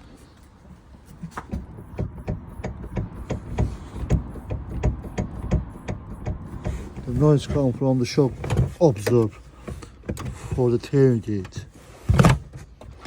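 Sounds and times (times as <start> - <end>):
rattling knocks: 1.4 - 10.8.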